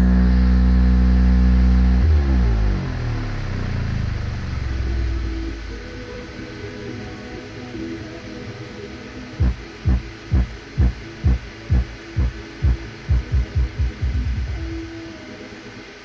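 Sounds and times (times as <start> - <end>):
filtered music bass thumps: 0.0 - 5.5, 9.4 - 14.9
low hum: 0.0 - 15.5.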